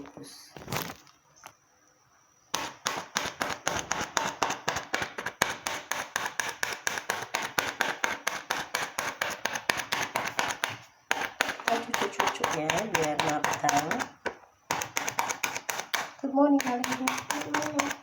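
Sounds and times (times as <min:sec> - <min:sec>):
plastic wrap being pricked: 0:06.3 - 0:18.0.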